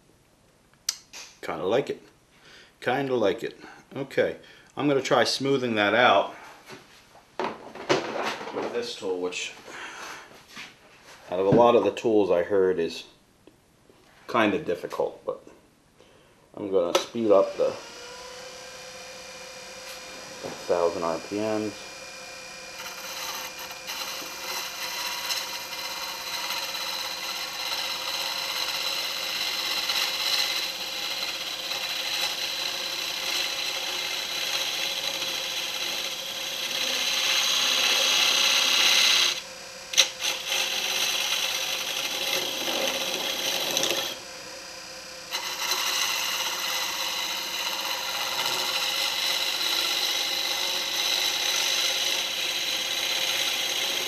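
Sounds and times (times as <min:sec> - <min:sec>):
wood lathe humming: 0:17.4 - 0:54.0
turning tool scraping wood: 0:22.8 - 0:44.4, 0:45.0 - 0:54.0.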